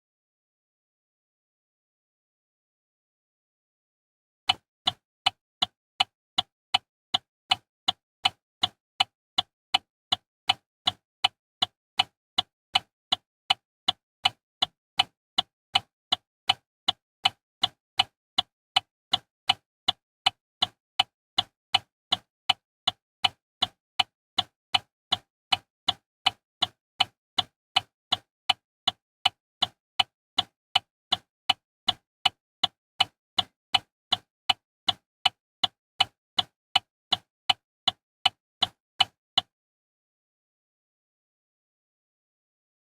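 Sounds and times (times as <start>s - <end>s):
turn signal ticking: 4.5s - 20.8s, 21.4s - 23.4s, 24.0s - 39.1s.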